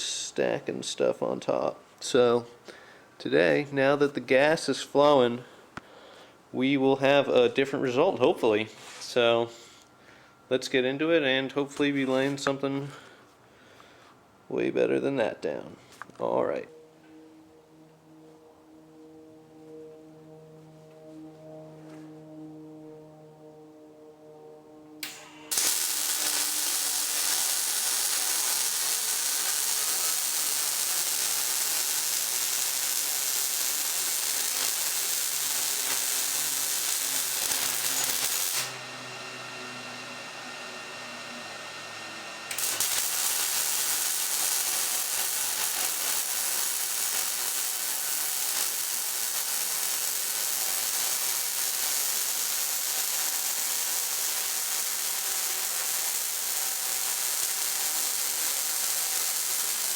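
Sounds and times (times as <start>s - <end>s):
welder arc crackling hiss: 25.0s - 38.8s, 42.5s - 59.9s.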